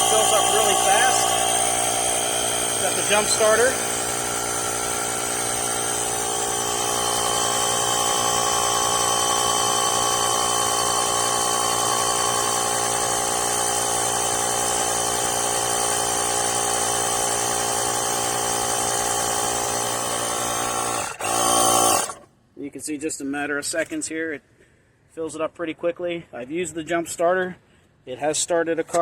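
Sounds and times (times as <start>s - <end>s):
air compressor running: 0.0s - 22.2s.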